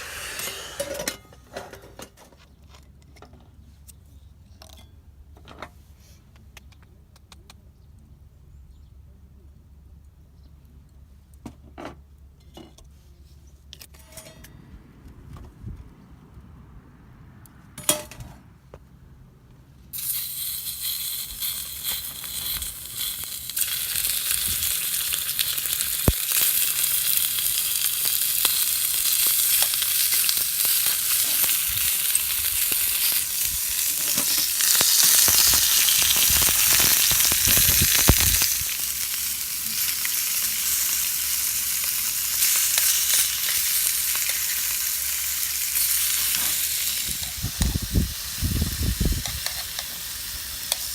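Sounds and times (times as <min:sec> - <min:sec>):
meat sizzling on a skillet: 0:20.0 - 0:50.9.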